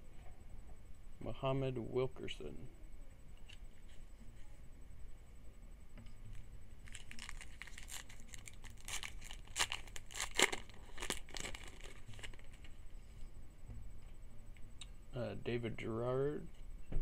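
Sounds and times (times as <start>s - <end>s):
wrapper being torn and crinkled: 6.8s - 12.7s.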